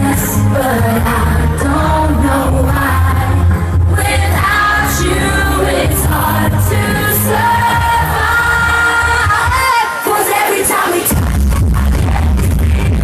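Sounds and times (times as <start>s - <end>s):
heavy bass beat: 11.1s - 13.0s.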